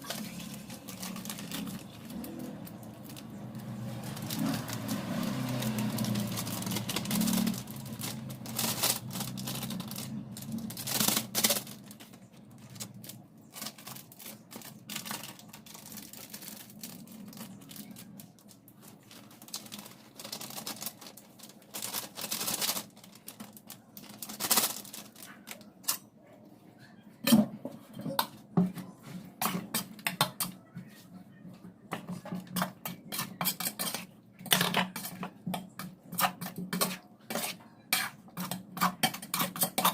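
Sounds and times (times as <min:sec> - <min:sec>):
dishes and utensils clinking: 0:27.2 - 0:30.9, 0:31.9 - 0:39.9.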